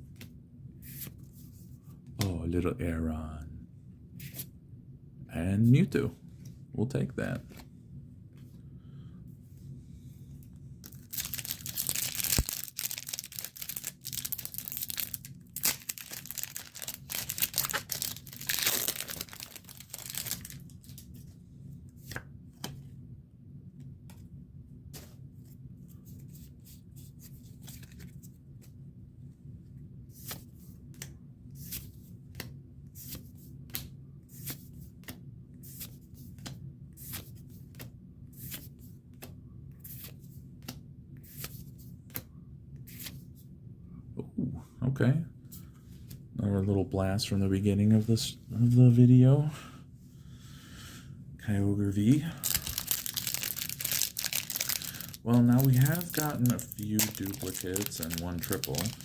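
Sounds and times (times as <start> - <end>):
cards sliding and flicking: 4.2 - 4.5, 22.0 - 22.9, 24.9 - 25.5, 30.1 - 43.4
foil pack tearing and crinkling: 10.8 - 21.1, 52.4 - 59.0.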